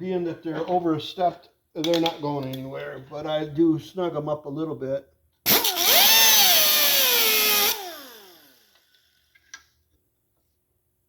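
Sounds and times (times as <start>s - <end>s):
power tool running: 5.5s - 8.9s.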